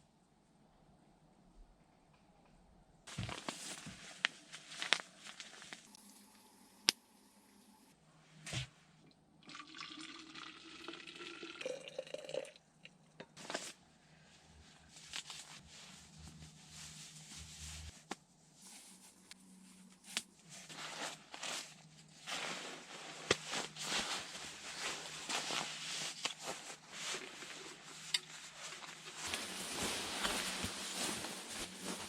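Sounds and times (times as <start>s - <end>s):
water pouring into a container: 9.4s - 12.6s.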